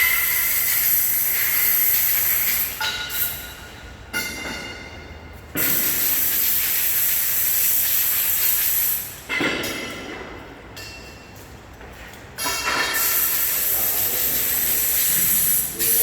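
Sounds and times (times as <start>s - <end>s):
loud hissing scraping noise: 12.9s - 16.0s.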